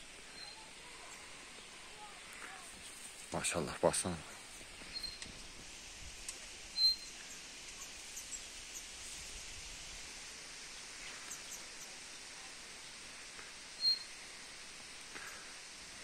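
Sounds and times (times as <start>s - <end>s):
small birds chirping: 0.0s - 5.6s, 6.2s - 9.3s, 10.6s - 16.0s
faint steady hiss: 0.0s - 16.0s.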